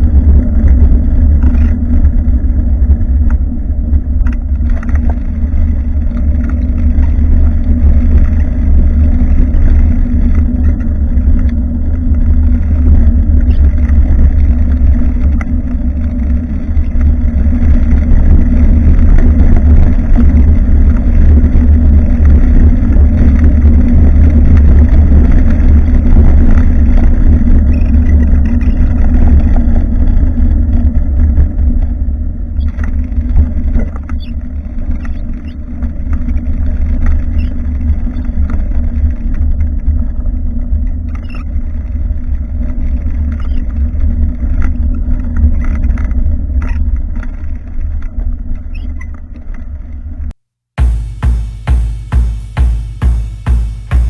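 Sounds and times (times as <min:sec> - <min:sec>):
tyre and road noise: 0:00.0 - 0:54.0
knocks and rattles: 0:50.8 - 0:54.0.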